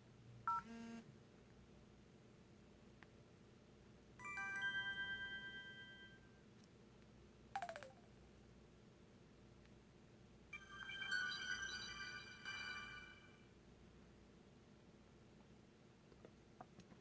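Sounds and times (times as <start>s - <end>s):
phone chime tones: 7.6s - 8.0s, 10.6s - 13.4s.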